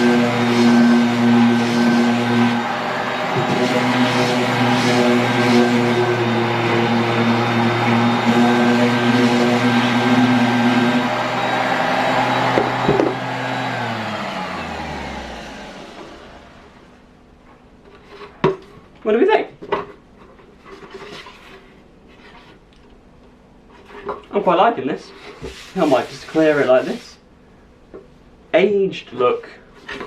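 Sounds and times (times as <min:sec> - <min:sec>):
electric power sander running: 0:00.0 - 0:16.9.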